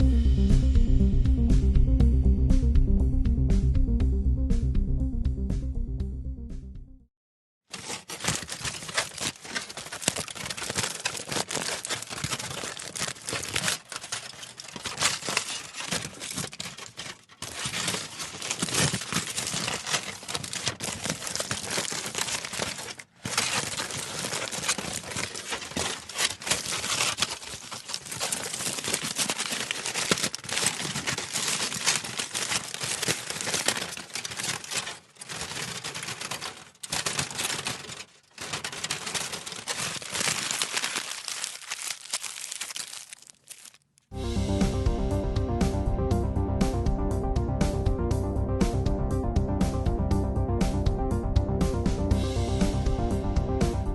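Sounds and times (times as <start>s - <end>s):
aluminium foil crinkling: 7.6s - 44.1s.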